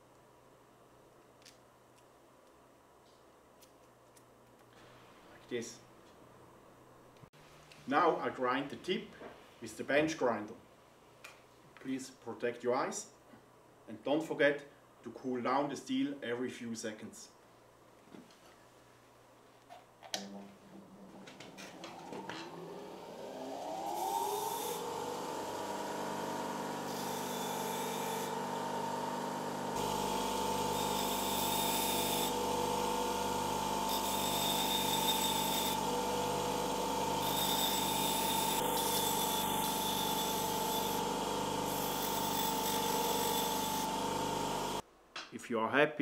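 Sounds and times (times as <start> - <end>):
bench grinder motor whine: 21.7 - 44.8.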